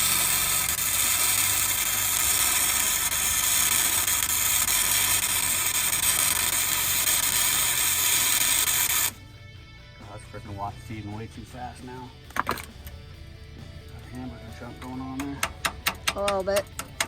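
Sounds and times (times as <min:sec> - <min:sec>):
welder arc sizzling: 0:00.0 - 0:09.2.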